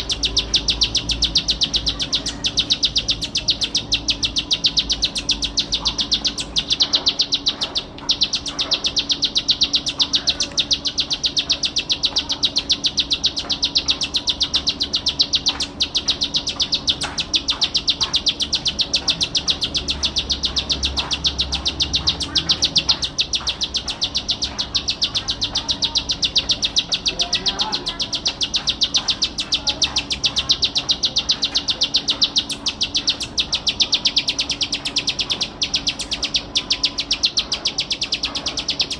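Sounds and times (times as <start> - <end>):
bird singing fast trill: 0.0 - 38.9.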